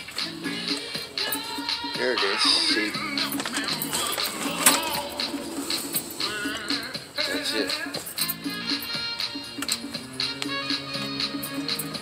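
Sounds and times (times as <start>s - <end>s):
background music: 0.0s - 12.0s.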